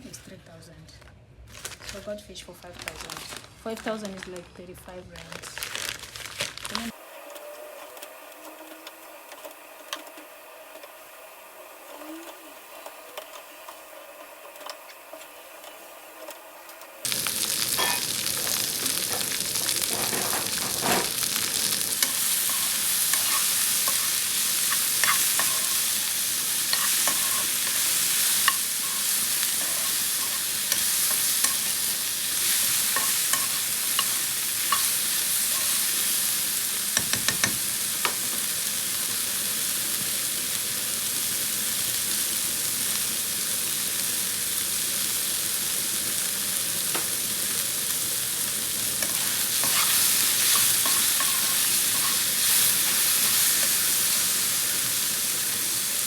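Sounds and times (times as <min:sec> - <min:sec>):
food sizzling in hot oil: 0:06.7 - 0:56.0
utensil clicking against pan: 0:37.0 - 0:38.2.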